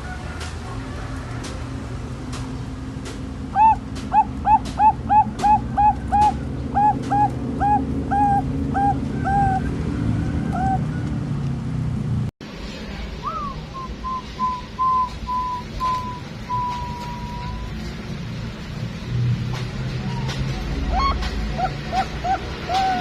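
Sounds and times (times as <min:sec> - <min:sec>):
dove cooing: 0:03.5 - 0:11.0, 0:13.2 - 0:17.7, 0:20.1 - 0:23.0.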